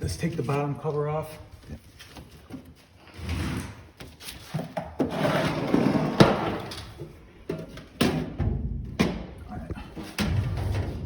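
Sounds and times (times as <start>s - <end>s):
sheet metal scraping and rattling: 5.0s - 11.0s.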